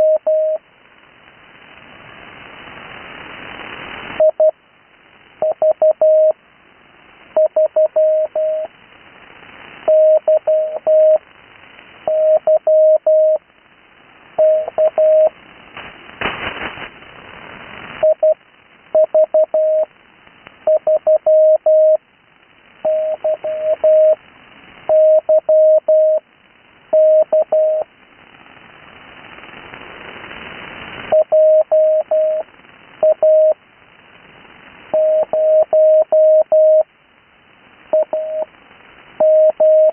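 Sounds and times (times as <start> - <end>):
burst of radio static: 0.0 - 6.4, 7.0 - 36.9
radio band hiss: 0.0 - 39.9
morse code tone: 14.4 - 15.3, 22.9 - 24.2, 38.0 - 38.5.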